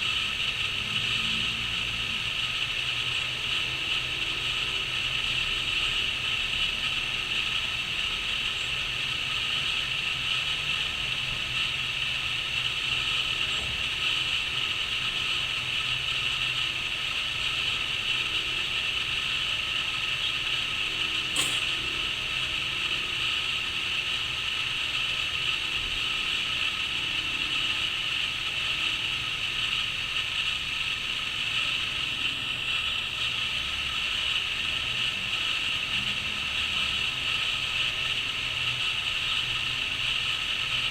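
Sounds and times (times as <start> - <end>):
brief click: 21.3 - 21.9.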